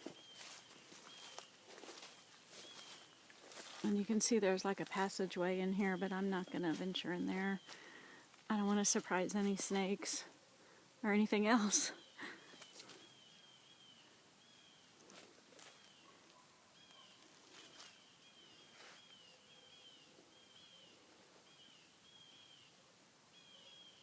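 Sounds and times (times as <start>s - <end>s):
faint high chirp: 0.0s - 3.2s.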